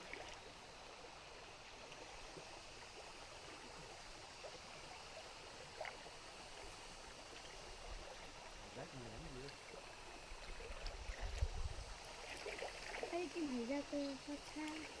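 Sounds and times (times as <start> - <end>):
stream flowing: 0.0 - 15.0.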